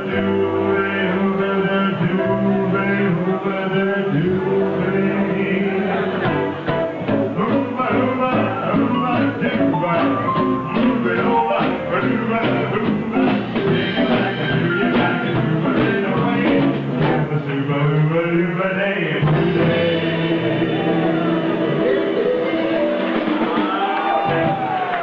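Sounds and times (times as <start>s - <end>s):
live band playing: 0.0s - 18.0s, 19.0s - 25.0s
person singing: 0.0s - 24.6s
drum beat: 6.2s - 17.4s, 19.2s - 25.0s.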